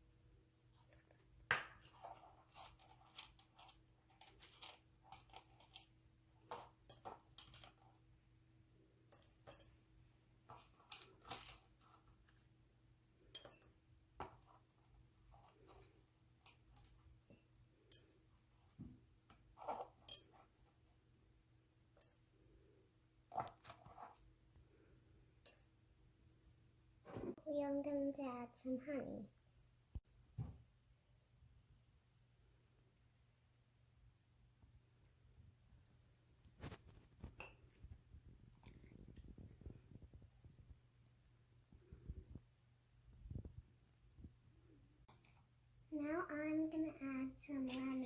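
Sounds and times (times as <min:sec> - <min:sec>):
kitchen clicks and clinks: 0:13.3 - 0:13.8, 0:25.4 - 0:25.8.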